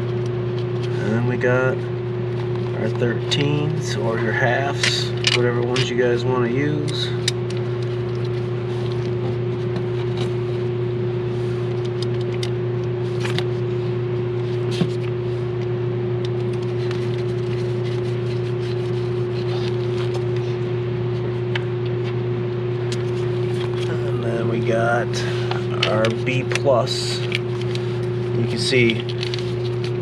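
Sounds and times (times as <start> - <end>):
machine hum: 0.0 - 30.0.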